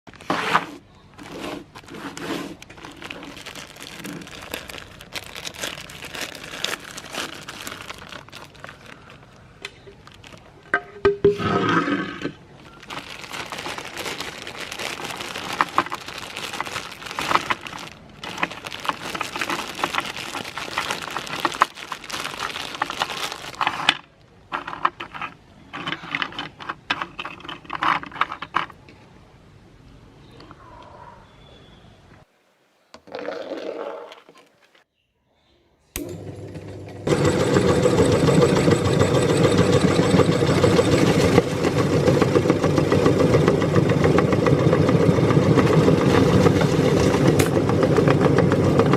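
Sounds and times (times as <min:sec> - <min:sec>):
meat grinder crunching cookies: 0:02.6 - 0:09.1, 0:12.7 - 0:23.6, 0:36.0 - 0:48.9.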